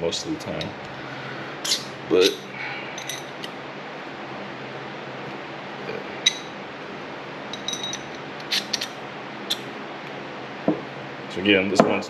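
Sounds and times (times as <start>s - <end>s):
steady background hiss: 0.0s - 12.0s
small metal parts clinking: 3.0s - 3.3s, 7.6s - 8.9s.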